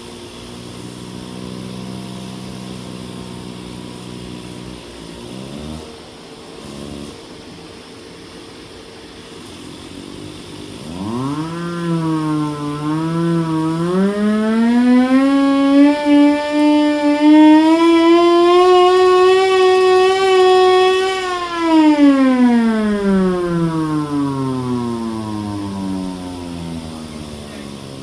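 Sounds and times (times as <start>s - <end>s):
steady running noise: 0.0s - 28.0s
hand-crank siren wailing: 10.8s - 28.0s.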